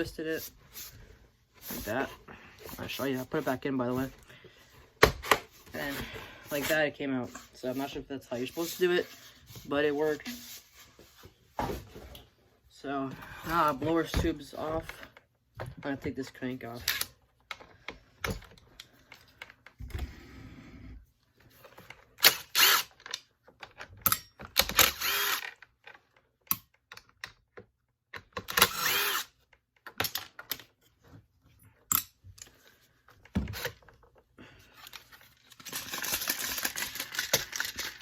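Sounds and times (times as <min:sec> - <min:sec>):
screws and plastic parts clicking: 0:21.8 - 0:30.8.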